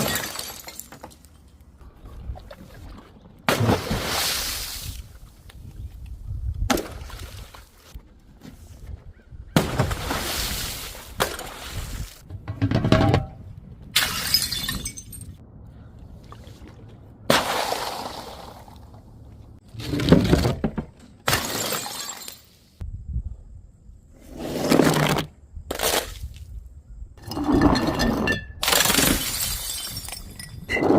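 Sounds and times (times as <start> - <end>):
glass bottles shattering: 0.0 - 1.2, 14.0 - 15.4, 21.3 - 22.5, 27.3 - 30.8.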